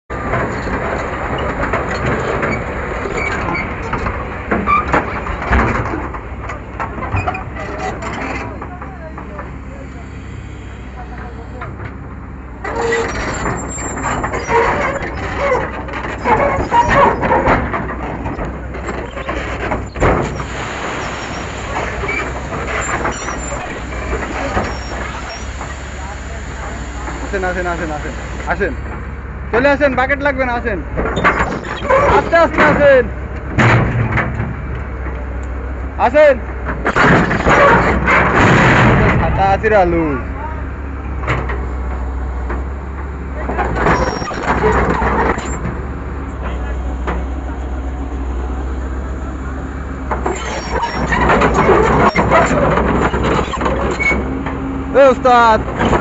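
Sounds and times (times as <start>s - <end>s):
diesel engine rumbling: 0.0s - 56.0s
metallic clanks and knocks: 0.2s - 9.6s.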